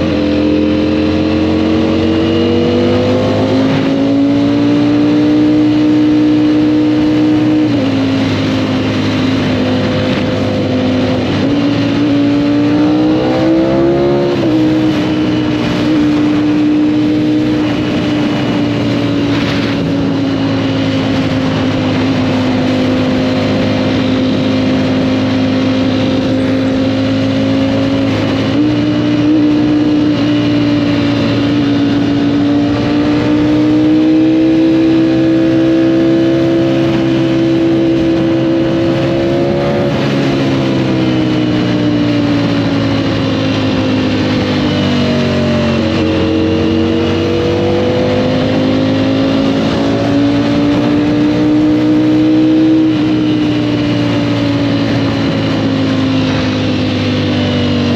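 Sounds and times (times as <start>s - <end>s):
motorcycle engine running: 0.0s - 57.9s
wind and road noise: 0.0s - 57.9s.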